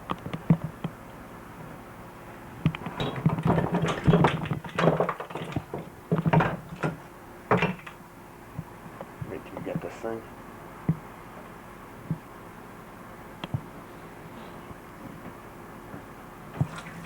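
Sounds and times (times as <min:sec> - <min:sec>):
objects knocking tapping and rubbing: 0:02.7 - 0:08.0.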